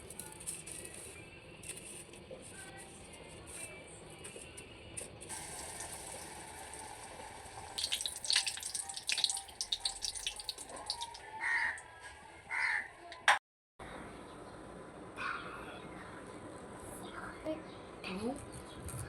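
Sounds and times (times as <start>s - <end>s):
crow cawing: 11.4s - 11.8s, 12.5s - 12.9s.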